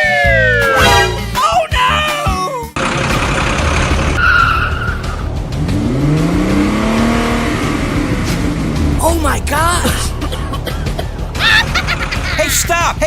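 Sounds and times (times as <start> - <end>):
vehicle engine: 2.8 - 13.0.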